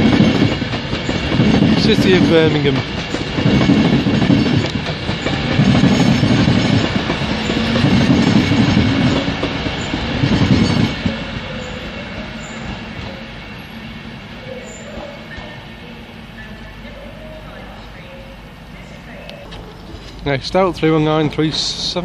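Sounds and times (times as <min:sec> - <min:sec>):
train wheels clattering on rails: 0:00.0 - 0:16.9.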